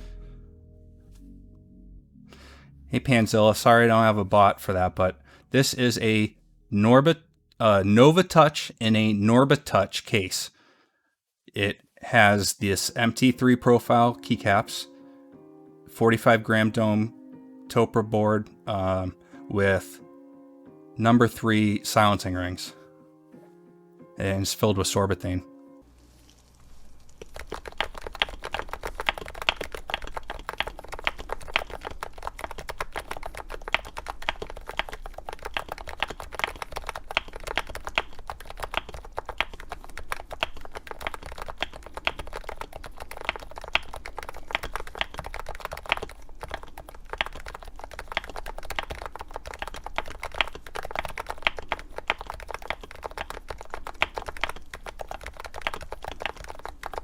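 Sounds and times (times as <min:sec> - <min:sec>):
low steady hum: 0:00.0 - 0:08.4
fast keyboard typing: 0:27.0 - 0:57.0.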